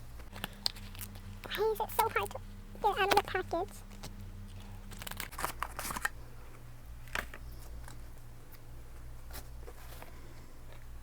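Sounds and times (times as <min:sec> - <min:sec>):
plastic packaging crinkling: 0:03.0 - 0:06.2.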